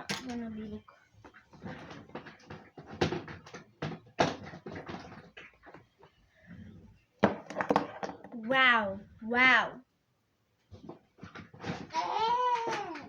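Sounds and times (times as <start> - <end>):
fidget toys clicking and knocking: 0.0 - 0.6, 10.8 - 13.0.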